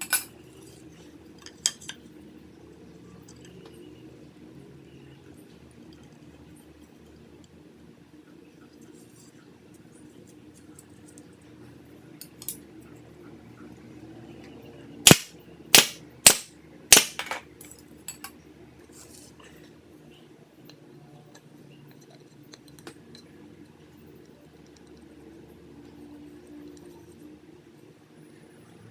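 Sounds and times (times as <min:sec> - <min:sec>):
sharp loud impacts: 0:15.1 - 0:17.4.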